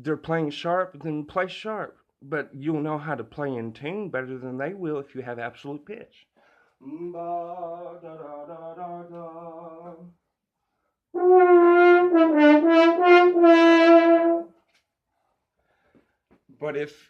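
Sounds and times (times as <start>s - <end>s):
brass horn playing sustained notes: 11.2s - 14.5s.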